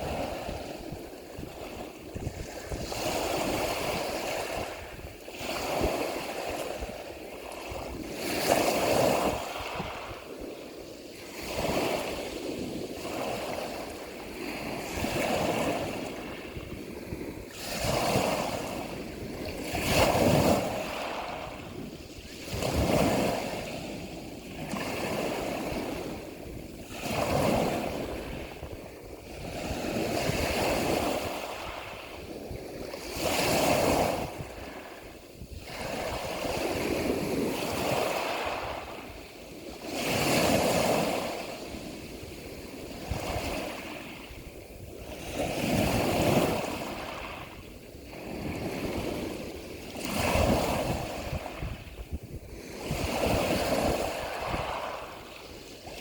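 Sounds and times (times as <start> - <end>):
ocean waves breaking: 0.0 - 56.0.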